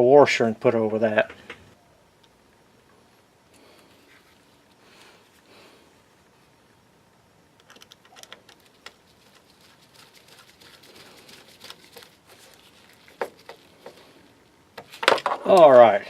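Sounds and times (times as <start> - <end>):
small parts clicking and scraping: 7.6 - 15.8.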